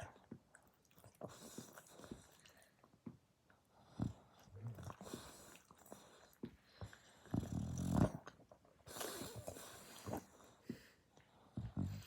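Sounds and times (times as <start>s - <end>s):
dog snoring: 7.0s - 8.3s, 11.4s - 12.0s.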